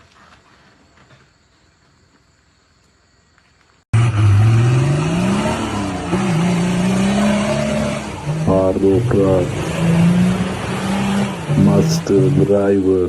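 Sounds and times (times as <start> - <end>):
off-road vehicle engine revving: 4.0 - 13.0.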